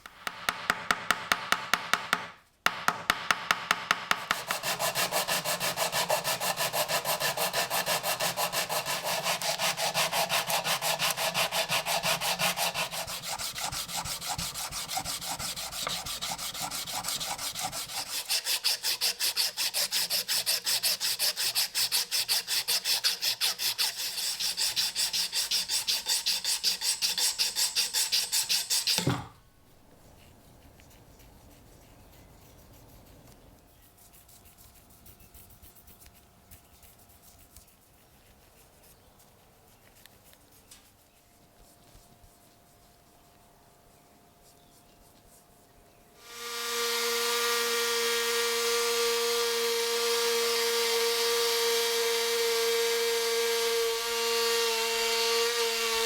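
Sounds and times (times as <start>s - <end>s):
file strokes on knife: 4.1s - 29.3s, 30.0s - 47.0s.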